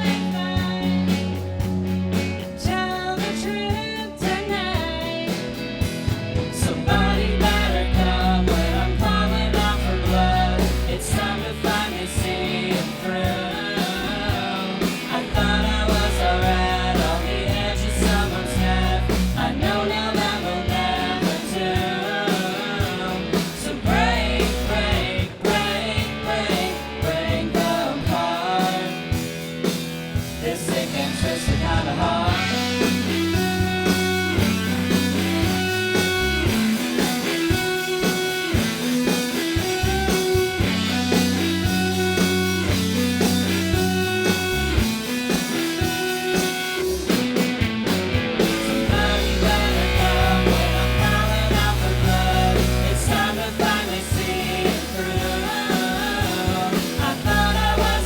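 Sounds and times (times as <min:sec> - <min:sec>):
bass guitar: 0:00.0 - 0:58.0
drum kit: 0:00.0 - 0:58.0
electric guitar: 0:00.0 - 0:58.0
person singing: 0:06.6 - 0:29.2, 0:30.4 - 0:36.6, 0:48.7 - 0:58.0.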